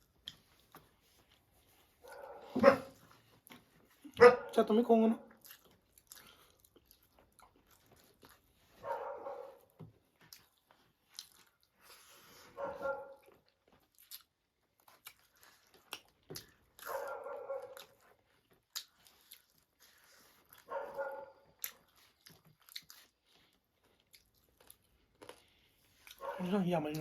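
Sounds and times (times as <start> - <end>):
chewing and crunching: 0.0 - 27.0.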